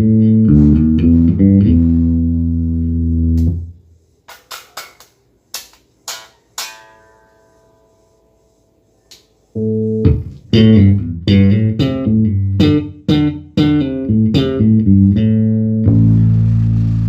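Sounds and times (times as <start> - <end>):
electric bass guitar notes: 0.0 - 3.7, 9.6 - 17.0.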